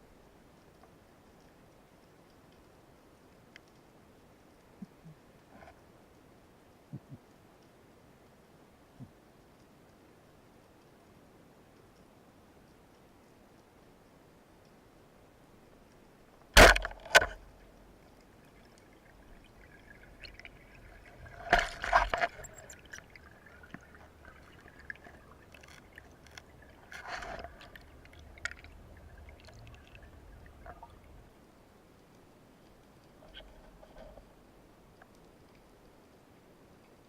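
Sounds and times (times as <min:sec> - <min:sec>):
underwater splash: 0:16.6 - 0:17.5, 0:18.7 - 0:31.3
underwater bubbling and gurgling: 0:16.6 - 0:34.5.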